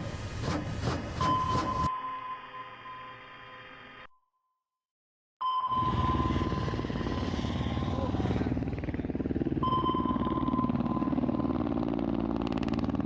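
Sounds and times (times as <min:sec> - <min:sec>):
high-pitched beep tone: 0:01.2 - 0:03.5, 0:05.4 - 0:06.5, 0:09.6 - 0:11.6
mechanical drone of pulses: 0:05.7 - 0:13.0.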